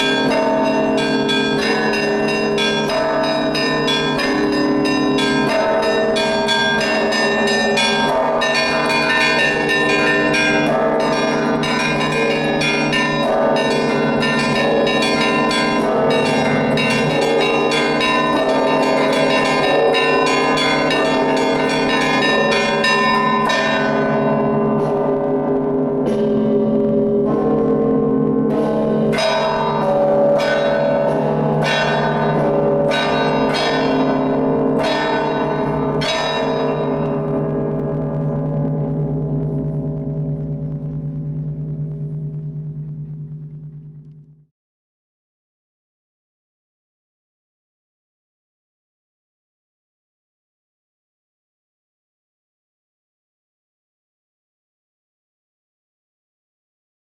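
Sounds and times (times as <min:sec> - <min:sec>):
deep hum of large bells: 0:00.0 - 0:44.5.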